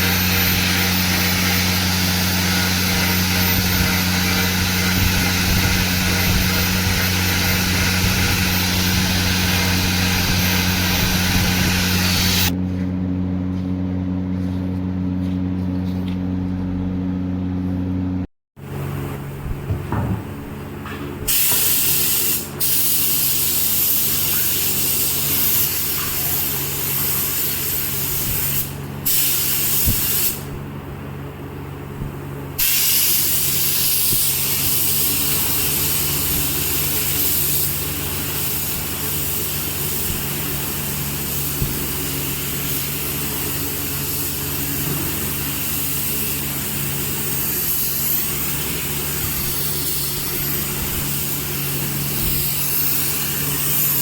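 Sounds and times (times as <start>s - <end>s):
electric motor running: 0.0s - 12.6s
wood being cut hiss: 0.0s - 12.6s, 21.3s - 30.5s, 32.6s - 54.0s.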